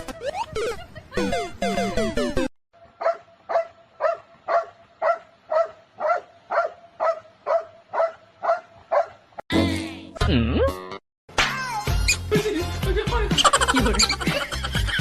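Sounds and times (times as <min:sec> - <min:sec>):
dog barking: 0:03.0 - 0:09.2
music: 0:11.3 - 0:15.0.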